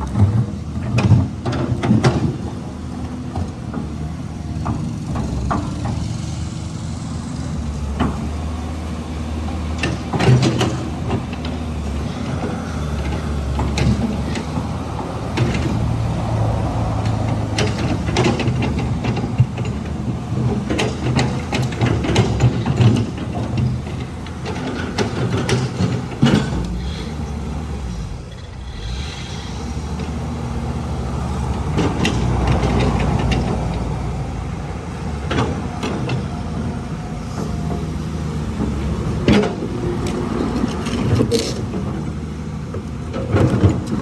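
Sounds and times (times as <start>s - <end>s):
excavator diesel engine running: 0.0s - 44.0s
sharp clanks and knocks: 0.1s - 4.0s, 4.6s - 6.4s, 9.6s - 16.0s, 17.0s - 27.2s, 37.3s - 44.0s.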